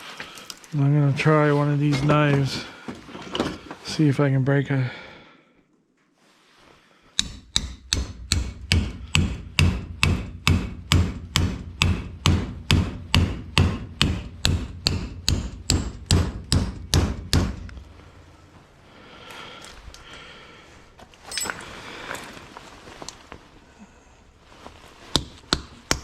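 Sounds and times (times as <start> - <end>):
hammer pounding on scrap: 7.2 - 17.8.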